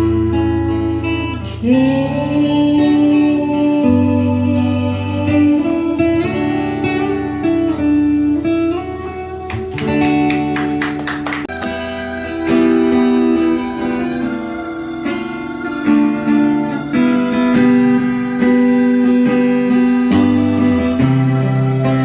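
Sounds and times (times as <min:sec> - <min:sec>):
guitar instrumental music: 0:00.0 - 0:22.0
sharp guitar strums: 0:06.0 - 0:22.0.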